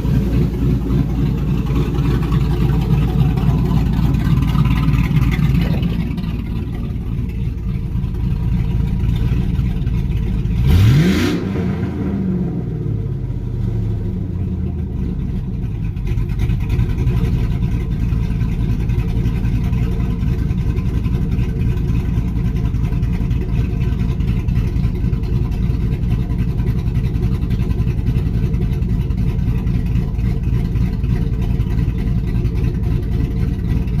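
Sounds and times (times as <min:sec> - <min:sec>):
truck engine idling with choppy lope: 0:00.0 - 0:34.0.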